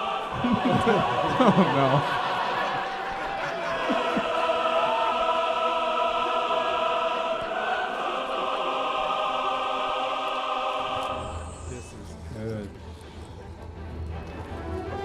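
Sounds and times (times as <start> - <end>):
choir singing sustained chords: 0.0 - 15.0.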